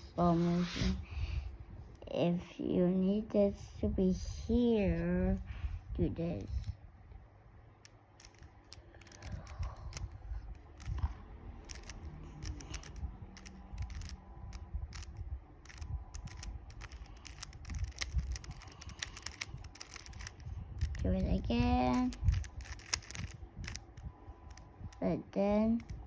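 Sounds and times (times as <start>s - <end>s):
puzzle cube plastic clicks: 7.9s - 25.0s, 25.8s - 26.0s
low handling rumble: 8.2s - 26.0s.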